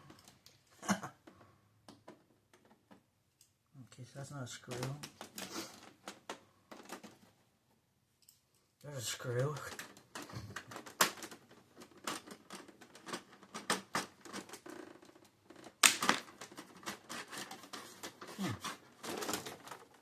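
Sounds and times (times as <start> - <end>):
printer parts clicking and clattering: 9.2 - 14.6, 15.7 - 20.0.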